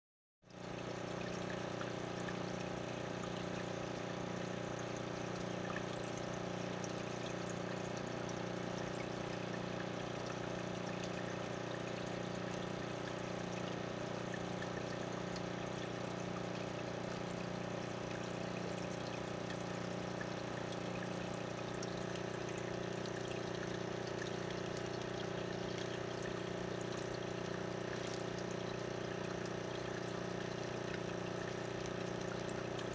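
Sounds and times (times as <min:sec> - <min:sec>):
filter low electric hum: 0:00.5 - 0:32.9
water trickling: 0:00.5 - 0:32.9.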